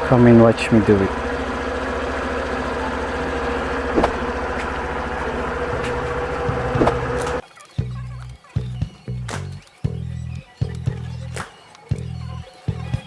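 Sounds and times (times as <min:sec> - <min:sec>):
loose body panel buzzing: 0:00.0 - 0:07.4
scooter engine idling: 0:00.0 - 0:13.0.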